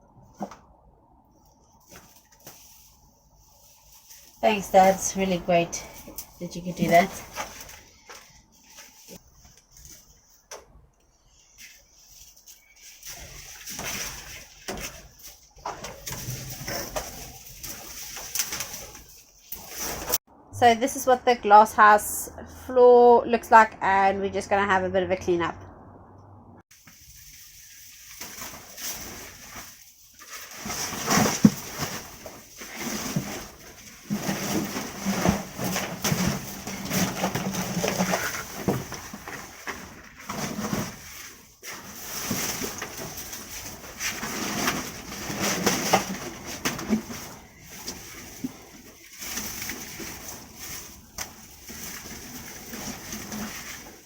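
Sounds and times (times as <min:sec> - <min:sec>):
scraping rustling and knocking debris: 0:01.6 - 0:10.6, 0:11.3 - 0:20.2, 0:26.7 - 0:54.0.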